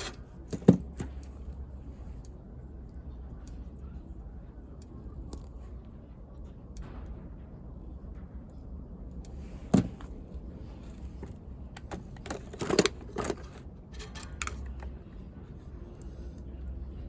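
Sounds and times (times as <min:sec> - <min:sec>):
low steady hum: 0:00.0 - 0:17.0
clicks and knocks of tools: 0:10.9 - 0:15.1.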